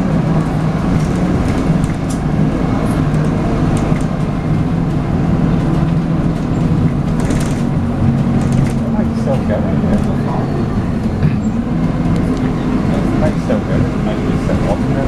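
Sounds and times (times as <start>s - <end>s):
bus diesel engine drone: 0.0s - 15.0s
road noise: 0.0s - 15.0s.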